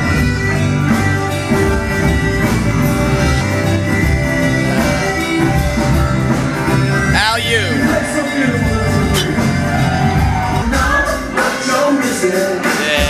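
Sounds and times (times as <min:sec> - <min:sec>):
rock music: 0:00.0 - 0:13.0.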